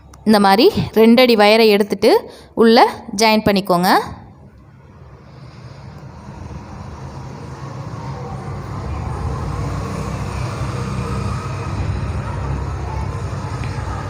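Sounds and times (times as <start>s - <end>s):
traffic rumble: 4.2s - 14.0s.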